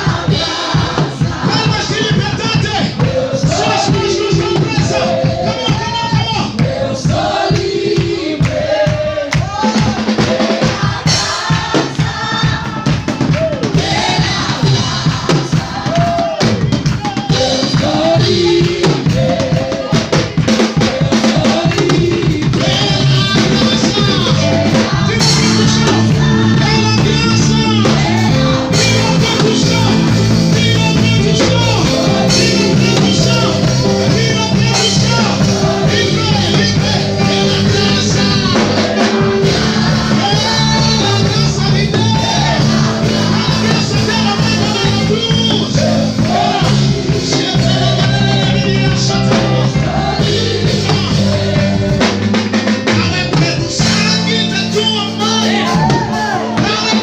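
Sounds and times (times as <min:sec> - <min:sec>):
drum kit and bass: 0:00.0 - 0:57.0
person singing: 0:15.8 - 0:57.0.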